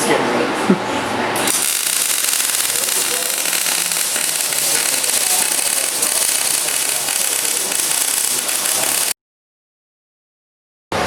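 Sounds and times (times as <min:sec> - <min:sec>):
welder arc crackling: 0:01.5 - 0:09.2.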